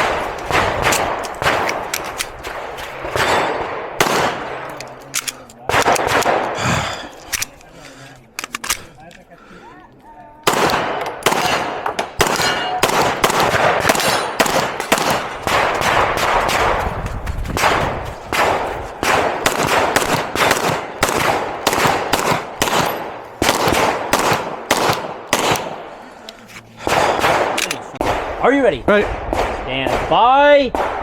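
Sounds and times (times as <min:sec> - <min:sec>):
pistol shots ringing: 0:00.0 - 0:04.9, 0:10.4 - 0:16.8, 0:17.6 - 0:25.8, 0:26.8 - 0:28.3.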